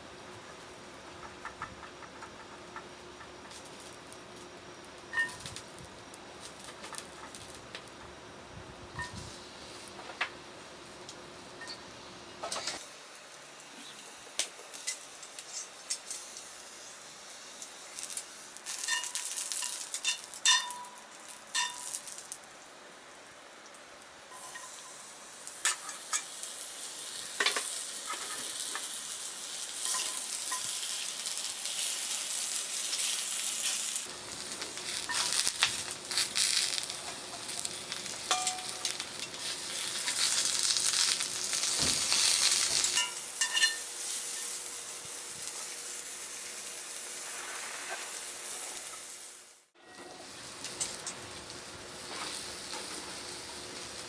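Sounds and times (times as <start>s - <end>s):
food sizzling in frying pan: 0.0s - 22.5s, 24.1s - 54.0s
utensil clinking against pan: 38.2s - 39.5s.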